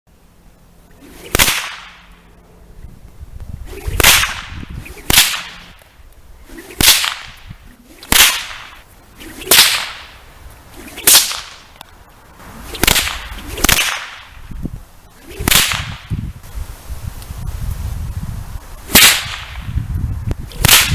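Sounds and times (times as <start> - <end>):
whip swishing and cracking: 1.0 - 2.2, 3.6 - 11.9, 12.5 - 14.5, 15.2 - 16.2, 18.8 - 19.8, 20.5 - 20.9.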